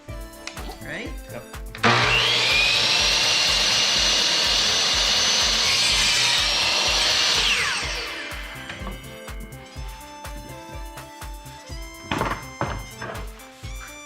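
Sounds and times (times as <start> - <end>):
background music with beat: 0.0 - 14.0
saw blade winding down: 1.8 - 10.1
electric saw cutting wood: 1.8 - 13.6.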